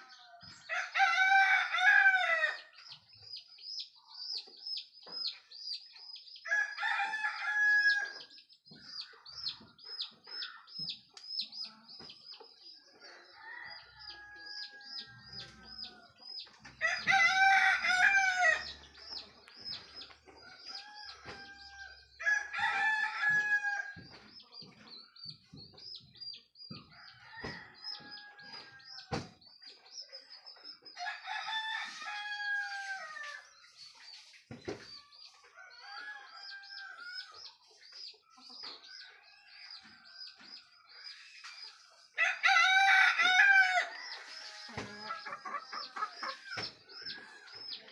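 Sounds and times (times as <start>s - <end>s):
roosters crowing: 0.0s - 2.7s, 6.4s - 8.3s, 13.0s - 24.1s, 26.8s - 29.4s, 31.0s - 33.5s, 35.5s - 37.3s, 42.2s - 47.9s.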